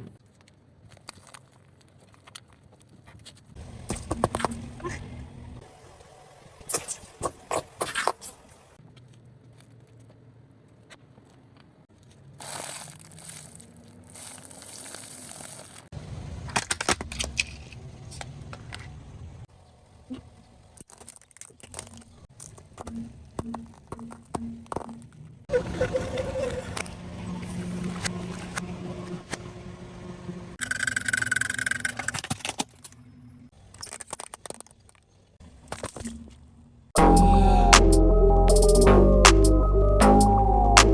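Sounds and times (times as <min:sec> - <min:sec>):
sharp crinkling cracks: 0:00.1 - 0:04.6, 0:06.7 - 0:18.7, 0:20.7 - 0:25.3, 0:33.6 - 0:36.2
tyre crushing crackling: 0:11.9 - 0:15.9.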